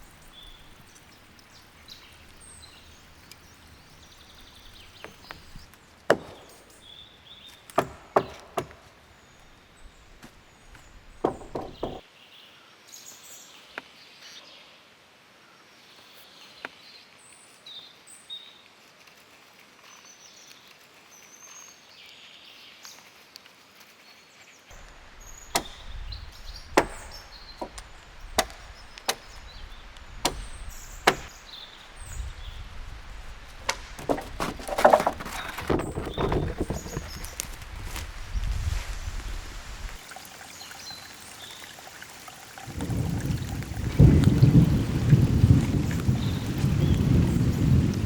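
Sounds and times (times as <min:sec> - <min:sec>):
sharp knocks: 0:05.0 - 0:06.9, 0:07.7 - 0:09.0, 0:10.2 - 0:12.0, 0:25.4 - 0:29.6, 0:30.2 - 0:31.3, 0:33.6 - 0:37.6.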